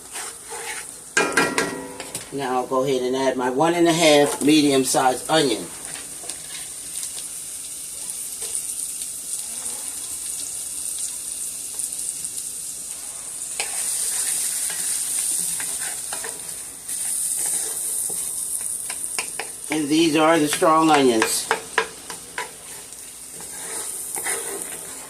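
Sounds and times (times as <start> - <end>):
utensil scraping a pan: 0.0 - 1.0, 12.9 - 25.0
onion sizzling in butter: 0.0 - 25.0.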